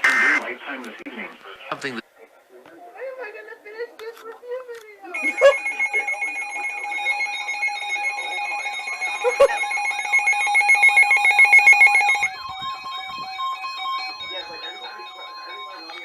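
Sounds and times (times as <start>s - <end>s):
two-tone alarm: 5.2s - 16.0s.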